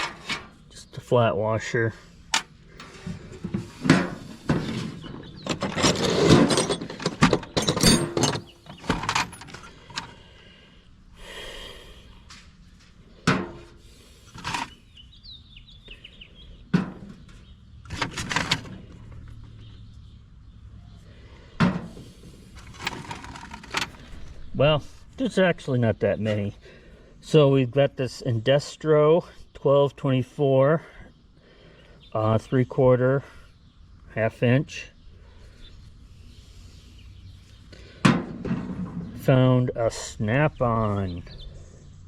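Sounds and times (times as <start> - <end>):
tools clanking and knocking: 2.3 - 10.2, 13.2 - 14.8, 16.7 - 19.6, 21.6 - 24.2, 38.0 - 39.3.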